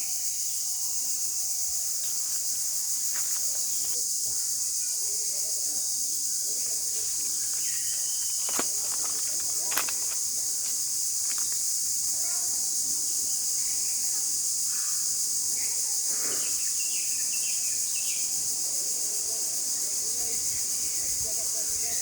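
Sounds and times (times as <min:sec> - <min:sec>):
high-pitched insect chorus: 0:00.0 - 0:22.0
sharp clicks: 0:08.4 - 0:11.6.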